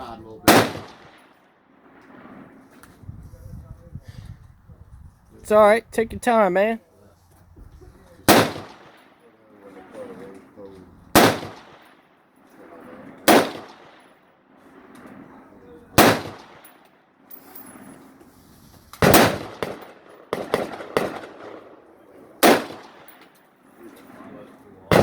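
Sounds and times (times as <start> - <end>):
rifle shots with echo: 0.4 - 2.6, 8.3 - 9.2, 11.1 - 16.8, 19.0 - 23.3, 24.1 - 25.0
quieter rifle shots: 0.4 - 2.8, 8.3 - 9.2, 11.1 - 15.4, 16.0 - 16.8, 19.0 - 23.4, 24.2 - 25.0.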